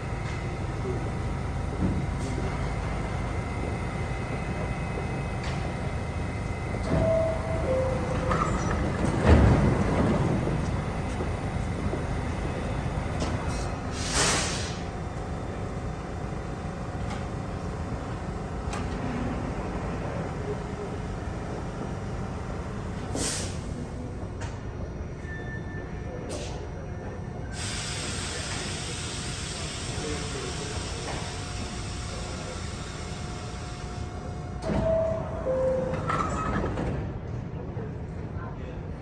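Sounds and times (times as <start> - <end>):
subway train rumble: 0.0 - 39.0
air hiss: 13.9 - 14.8.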